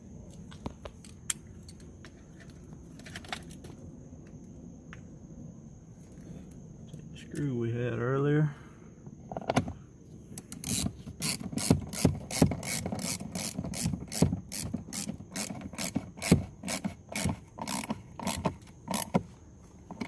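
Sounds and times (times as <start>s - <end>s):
hand ratchet clicking: 10.4s - 19.2s.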